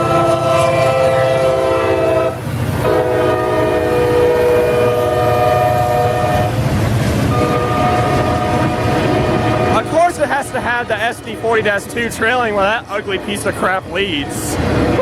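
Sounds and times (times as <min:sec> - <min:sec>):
locomotive air horn blasts: 0:00.0 - 0:06.6, 0:07.3 - 0:10.0
locomotive engine rumble: 0:00.0 - 0:15.0.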